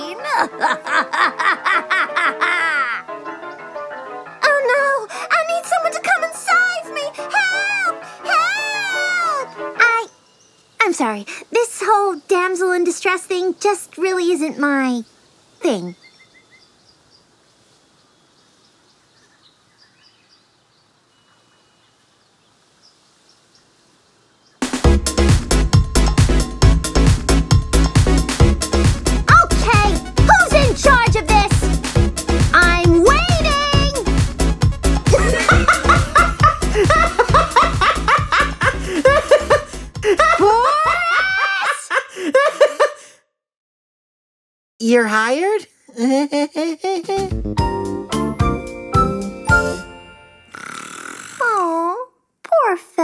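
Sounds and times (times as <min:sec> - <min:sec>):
cartoon character laughing: 0:00.0 - 0:03.1, 0:29.3 - 0:31.6, 0:35.1 - 0:43.0
soft background hiss: 0:00.0 - 0:24.8
upbeat background music: 0:02.4 - 0:10.0, 0:24.6 - 0:40.6, 0:47.2 - 0:50.5
small birds chirping: 0:08.9 - 0:40.1.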